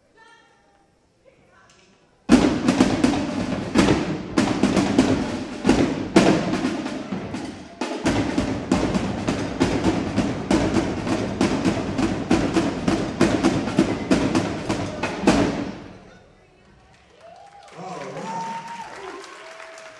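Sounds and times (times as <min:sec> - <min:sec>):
drum line playing cadence: 0:02.3 - 0:16.1.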